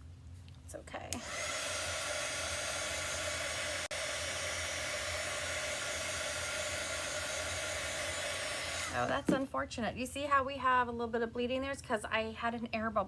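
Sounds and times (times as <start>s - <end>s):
hair dryer running: 1.1s - 9.5s.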